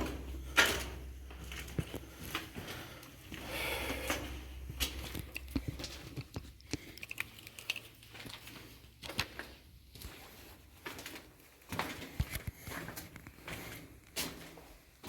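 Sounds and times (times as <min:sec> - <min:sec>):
footsteps crunching on grit: 0:08.1 - 0:15.0.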